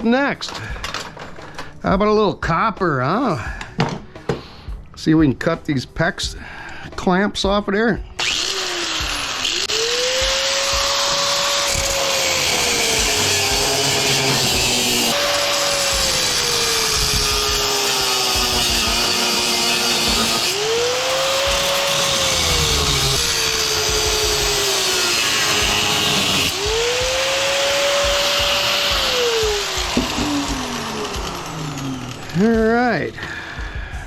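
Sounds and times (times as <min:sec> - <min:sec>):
power tool cutting metal: 0:08.2 - 0:33.1.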